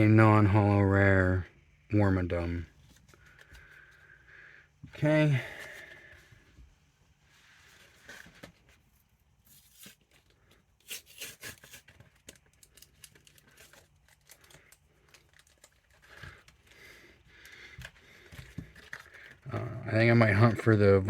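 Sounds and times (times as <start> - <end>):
wrapper crinkling and tearing: 9.5 - 19.5.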